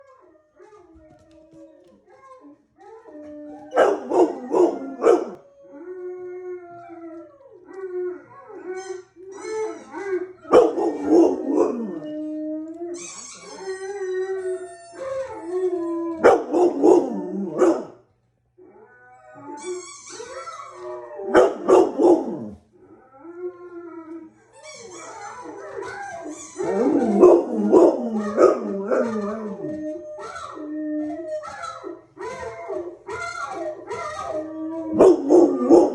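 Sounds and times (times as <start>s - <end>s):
dog howling: 0.9s - 18.0s, 18.6s - 24.3s, 25.0s - 35.9s
dog yipping: 3.7s - 5.4s, 10.5s - 12.0s, 16.2s - 17.9s, 19.6s - 22.4s, 24.6s - 30.5s.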